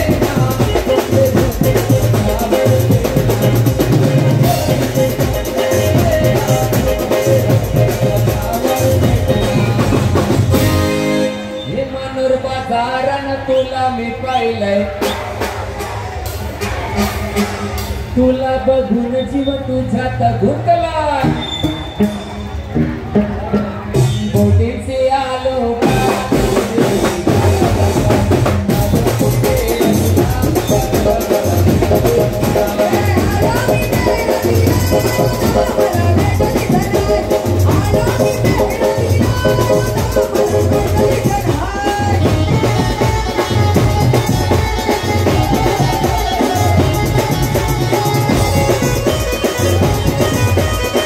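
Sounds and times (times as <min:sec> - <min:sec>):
fast steady drum beat: 0:00.0 - 0:11.5, 0:25.8 - 0:51.0
instrumental melody: 0:25.8 - 0:51.0.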